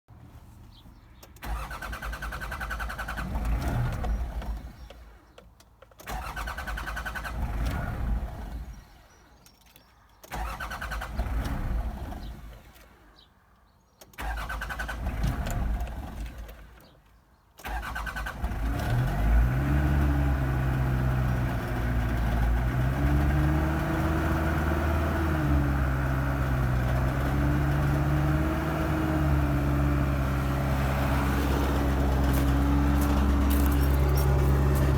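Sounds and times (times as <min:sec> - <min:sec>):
engine starter cranking: 0:01.2 - 0:04.9, 0:05.9 - 0:08.8, 0:10.2 - 0:12.9, 0:14.0 - 0:16.9, 0:17.6 - 0:19.2, 0:31.4 - 0:34.9
diesel engine rough idle: 0:20.2 - 0:34.9.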